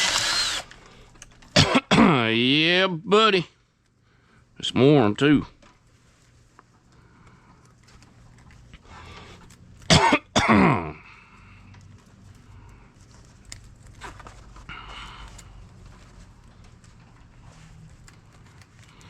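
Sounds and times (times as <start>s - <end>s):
man coughing: 1.6s - 2.3s, 9.9s - 11.0s
rustling: 5.5s - 9.9s, 11.5s - 19.0s.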